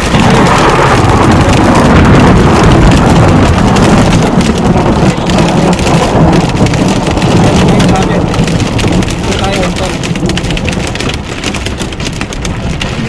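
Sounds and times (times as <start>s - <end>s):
rain and hail hammering a car: 0.0s - 13.0s.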